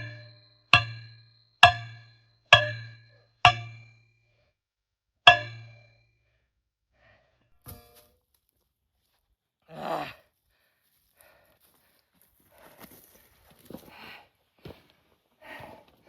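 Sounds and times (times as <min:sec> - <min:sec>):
ringing metallic clangs: 0:00.0 - 0:04.1, 0:05.3 - 0:06.0, 0:07.6 - 0:08.1.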